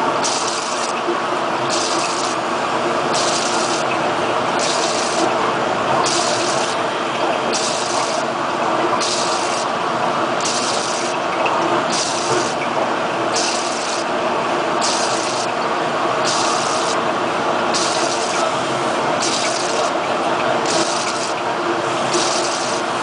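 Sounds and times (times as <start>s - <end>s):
machine hum: 0.0s - 23.0s
rushing liquid: 3.1s - 3.9s, 4.5s - 6.8s, 7.4s - 9.8s, 10.4s - 14.2s, 14.8s - 15.6s, 16.2s - 22.9s.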